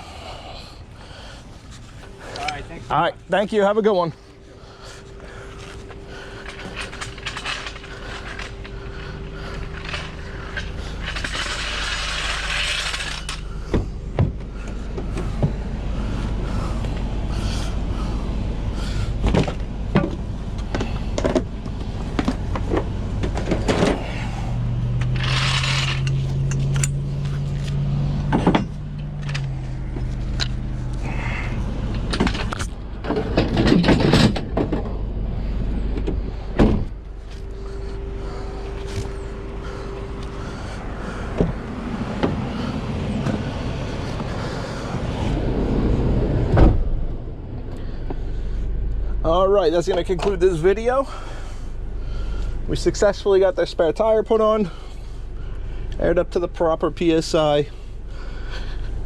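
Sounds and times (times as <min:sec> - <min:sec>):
vehicle engine rumbling: 0:00.0 - 0:59.0
equipment clanking and knocking: 0:04.9 - 0:15.7, 0:19.2 - 0:27.0, 0:28.2 - 0:31.1, 0:31.8 - 0:44.4.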